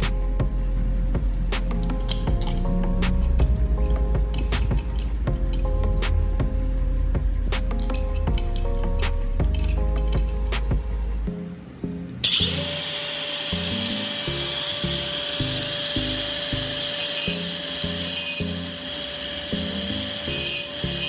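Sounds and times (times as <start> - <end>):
background music with a beat: 0.0 - 11.3.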